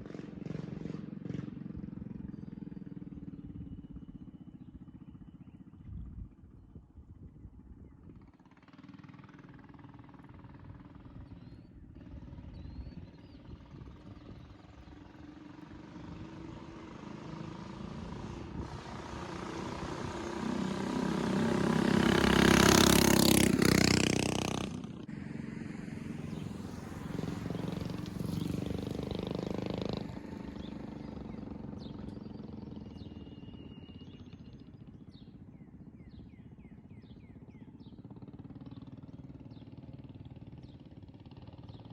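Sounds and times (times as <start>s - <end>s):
motorbike engine running: 0.0s - 41.9s.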